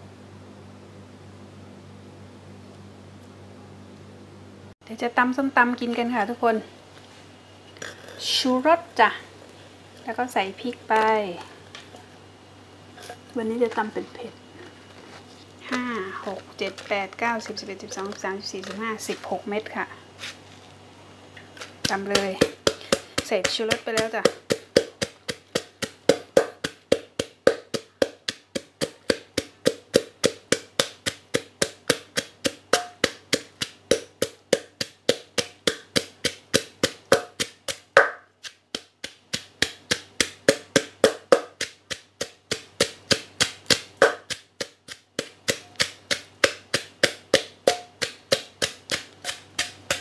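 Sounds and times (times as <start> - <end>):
pestle pounding in a mortar: 21.6 - 50.0.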